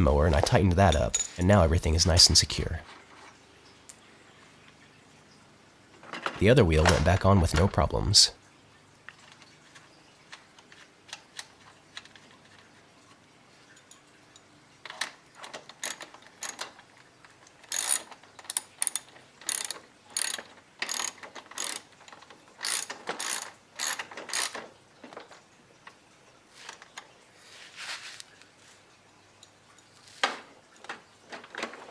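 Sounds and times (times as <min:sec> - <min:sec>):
ratchet wrench clicking: 0:17.7 - 0:21.8, 0:22.6 - 0:24.6.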